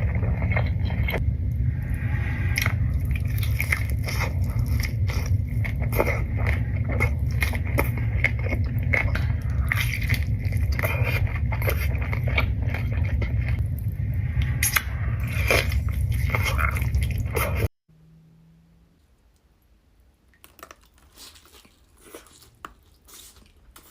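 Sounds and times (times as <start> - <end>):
steady low rumble: 0.0 - 19.1
biting and chewing: 2.5 - 13.8, 14.4 - 17.7, 20.4 - 23.9.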